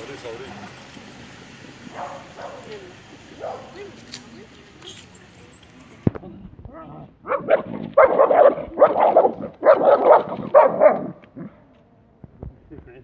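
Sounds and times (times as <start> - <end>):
dog barking: 1.9 - 2.8, 3.4 - 3.9, 7.2 - 11.2.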